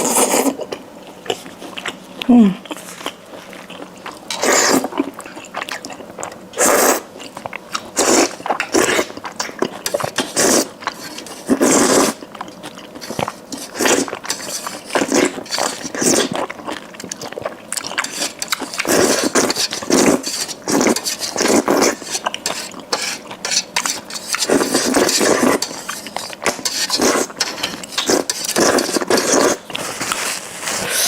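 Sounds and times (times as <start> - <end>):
chewing and biting: 0.1 - 6.4, 7.1 - 30.9
utensils clinking on dishes: 17.9 - 29.6.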